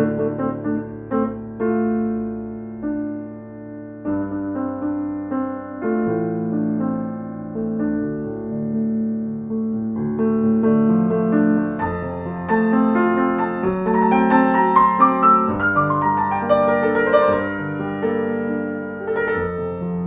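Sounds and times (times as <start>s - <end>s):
soft slow piano music: 0.0s - 20.0s.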